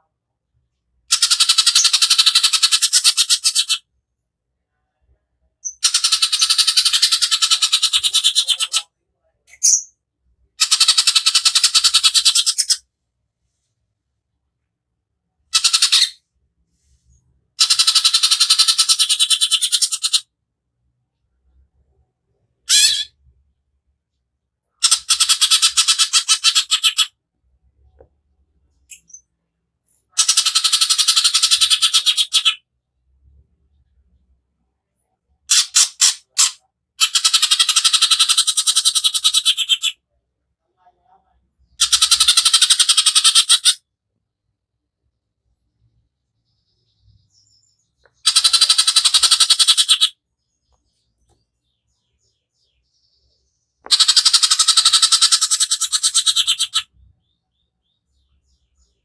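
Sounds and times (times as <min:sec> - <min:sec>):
bird sharp notes and chattering rattle: 0:01.1 - 0:03.9, 0:05.6 - 0:08.9, 0:10.6 - 0:12.8, 0:15.5 - 0:16.2, 0:17.6 - 0:20.3, 0:24.8 - 0:27.2, 0:28.8 - 0:32.6, 0:35.5 - 0:40.0, 0:41.7 - 0:43.8, 0:48.1 - 0:50.2, 0:53.9 - 0:57.0
bird rattling calls: 0:15.5 - 0:16.2, 0:30.2 - 0:32.6, 0:41.8 - 0:43.8, 0:48.2 - 0:50.1, 0:53.9 - 0:56.9.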